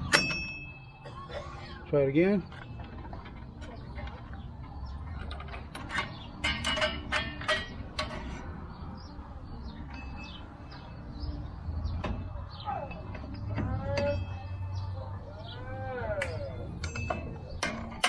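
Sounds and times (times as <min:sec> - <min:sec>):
metal spring and pliers clinking: 0:05.1 - 0:08.4, 0:12.0 - 0:14.8, 0:16.0 - 0:18.0.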